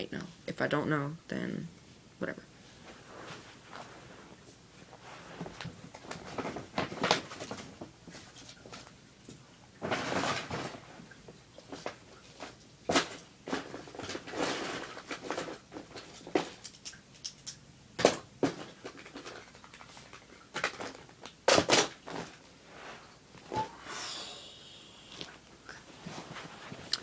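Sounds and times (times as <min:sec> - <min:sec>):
objects knocking and rustling: 0:05.0 - 0:23.8.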